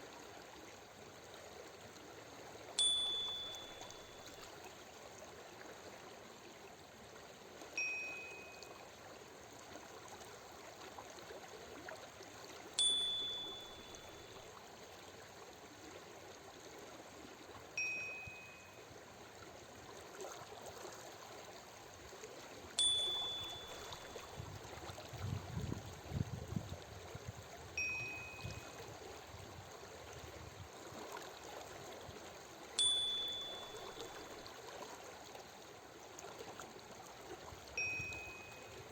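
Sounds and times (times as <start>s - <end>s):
gentle running water: 0.0s - 38.9s
short two-tone chime: 2.8s - 4.4s, 7.8s - 8.8s, 12.8s - 14.4s, 17.8s - 18.9s, 22.8s - 24.4s, 27.8s - 28.8s, 32.8s - 34.5s, 37.8s - 38.9s.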